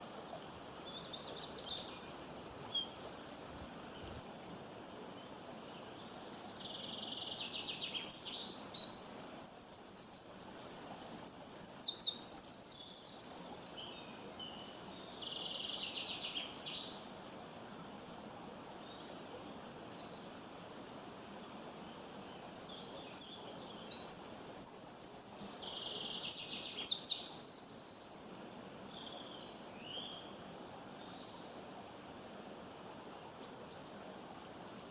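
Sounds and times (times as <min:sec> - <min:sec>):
songbird chirps and trills: 0:00.0 - 0:04.2, 0:05.2 - 0:28.3
faint background noise: 0:00.0 - 0:34.9.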